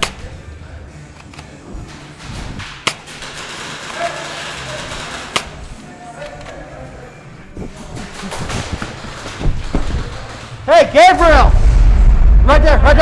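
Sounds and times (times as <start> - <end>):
background noise: 0.0 - 13.0
faint distant voices: 3.8 - 10.6.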